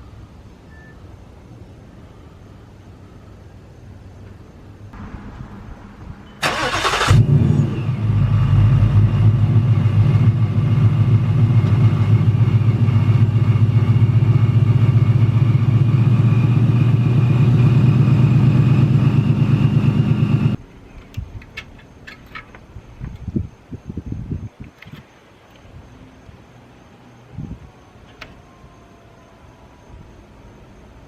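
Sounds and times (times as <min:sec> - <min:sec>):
car engine idling: 0:05.0 - 0:20.6.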